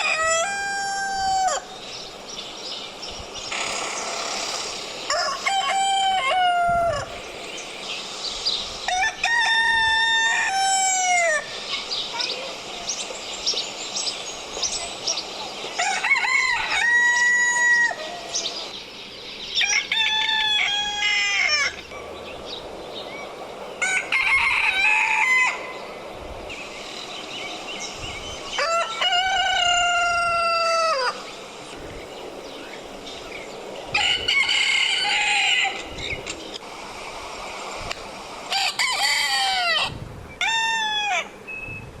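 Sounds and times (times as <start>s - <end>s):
rooster crowing: 0.0s - 1.8s, 5.0s - 7.2s, 8.9s - 11.6s, 15.7s - 18.5s, 19.6s - 21.9s, 23.8s - 25.8s, 28.5s - 31.2s, 33.9s - 35.9s, 38.5s - 41.4s.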